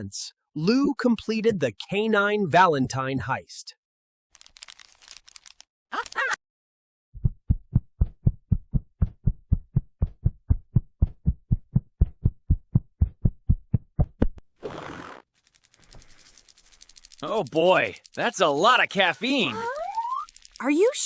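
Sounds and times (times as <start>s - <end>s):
fast pounding heartbeat: 7.2s - 14.4s.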